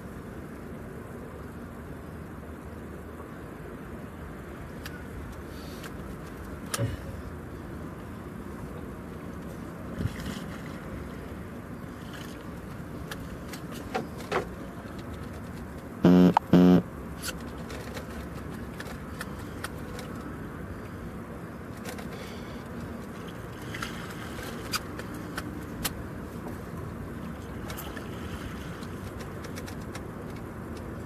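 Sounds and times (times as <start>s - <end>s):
horn honks: 16.0s - 16.8s.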